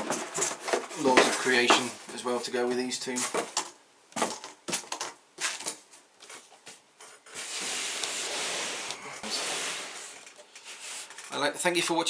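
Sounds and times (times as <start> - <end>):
cardboard boxes sliding and rustling: 7.3 - 11.2.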